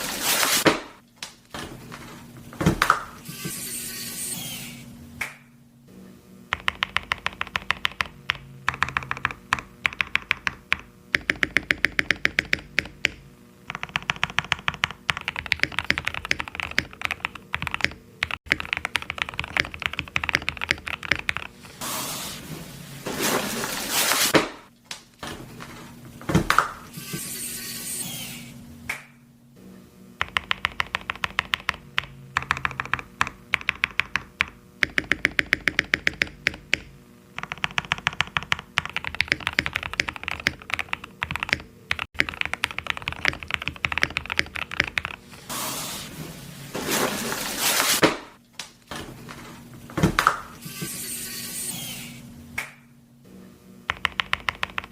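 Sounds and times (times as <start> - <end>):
mechanical keyboard typing: 6.5 - 21.5, 30.2 - 45.2, 53.9 - 54.9.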